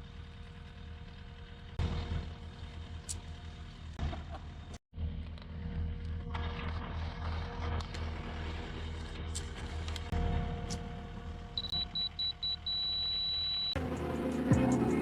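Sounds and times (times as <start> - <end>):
heavy diesel engine running: 0.0 - 5.2, 8.2 - 15.0.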